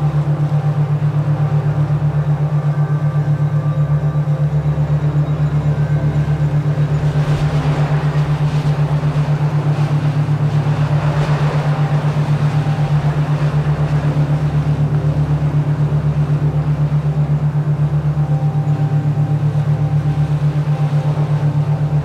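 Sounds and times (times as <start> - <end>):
pulsing low hum: 0.0 - 22.0.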